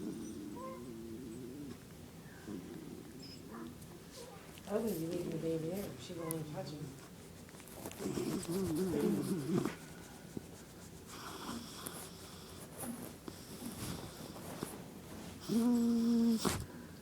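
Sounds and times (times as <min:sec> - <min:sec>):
dog whining: 0:00.0 - 0:04.5, 0:07.8 - 0:09.8, 0:15.4 - 0:16.6
dog wheezy snuffles: 0:07.1 - 0:16.7.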